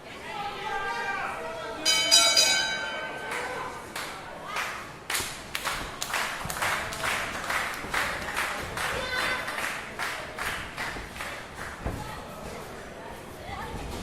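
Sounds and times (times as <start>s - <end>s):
crowd clapping: 3.3s - 11.8s.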